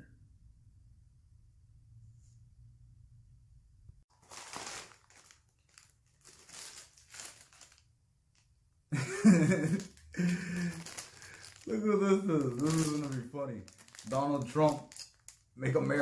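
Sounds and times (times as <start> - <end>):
plastic bag crinkling: 4.1 - 16.0
man talking: 11.6 - 14.9, 15.6 - 16.0.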